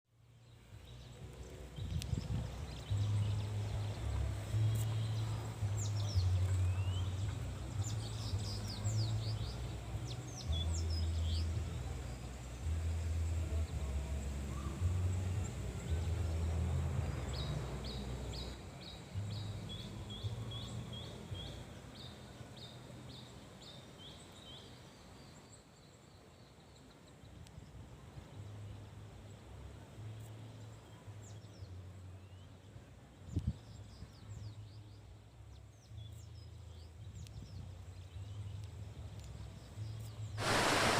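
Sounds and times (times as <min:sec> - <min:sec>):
wind rumble on microphone: 0:00.7 - 0:21.5, 0:33.0 - 0:34.7
birds chirping: 0:40.4 - 0:40.9
waterfall rushing: 0:40.4 - 0:40.9.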